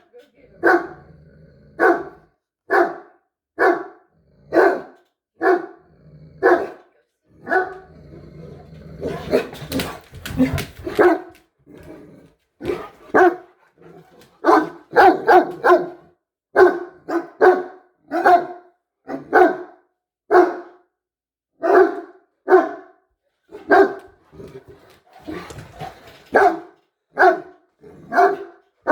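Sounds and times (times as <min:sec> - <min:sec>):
dogs barking: 0:00.6 - 0:01.0, 0:01.8 - 0:05.8, 0:06.4 - 0:06.8, 0:07.4 - 0:07.8, 0:09.0 - 0:11.4, 0:12.6 - 0:13.6, 0:14.4 - 0:20.8, 0:21.6 - 0:24.2, 0:26.3 - 0:28.9.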